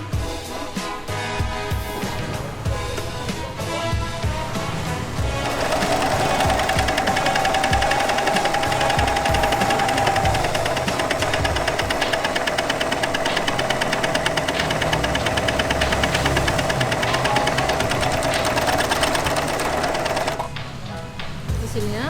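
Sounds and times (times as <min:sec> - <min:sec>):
overlocker sewing chatter: 0:05.1 - 0:20.6
motor hum: 0:05.2 - 0:20.7.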